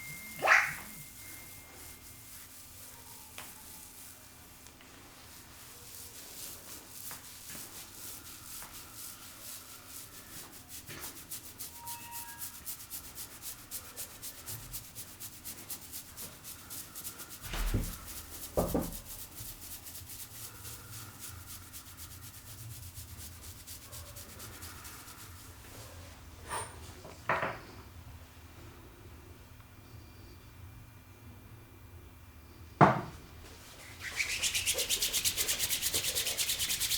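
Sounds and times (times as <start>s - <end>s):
hands rubbing hair and scalp: 0.0s - 25.8s, 33.6s - 36.9s.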